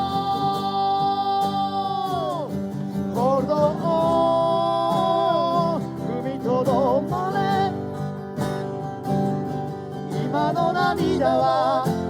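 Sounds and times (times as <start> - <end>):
person singing: 0.0 - 2.6, 3.2 - 8.0, 10.1 - 12.0
acoustic guitar: 0.0 - 12.0.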